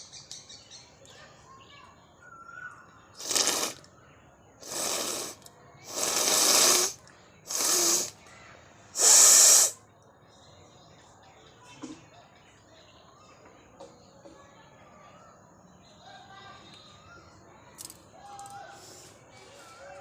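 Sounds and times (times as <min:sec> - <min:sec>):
person blowing nose: 0:03.2 - 0:03.8, 0:04.6 - 0:08.2, 0:09.0 - 0:09.8.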